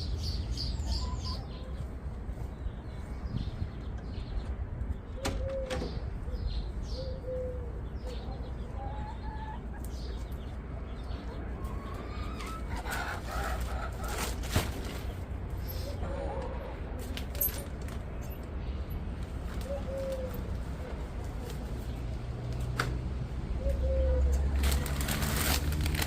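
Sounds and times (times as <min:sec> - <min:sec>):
chickens clucking: 0:07.2 - 0:17.1.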